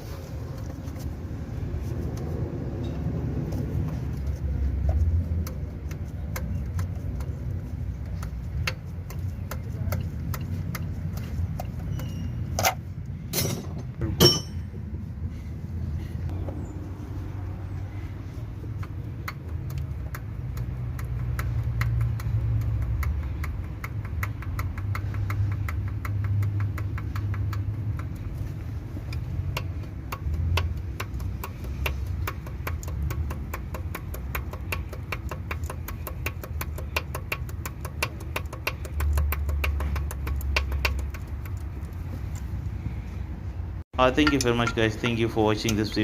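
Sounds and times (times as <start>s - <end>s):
car engine idling: 0.0s - 13.3s, 15.9s - 46.0s
engine ticking knock: 3.4s - 12.1s, 18.6s - 42.4s.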